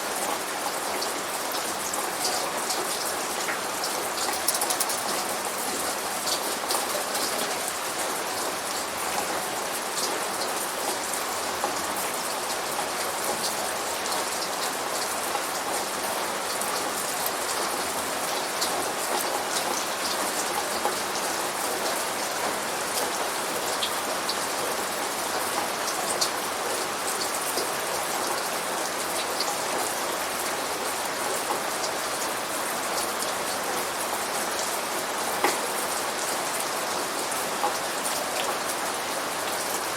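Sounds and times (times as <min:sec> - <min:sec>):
steady rain hiss: 0:00.0 - 0:39.9
raindrops ticking on hard surface: 0:00.1 - 0:24.4.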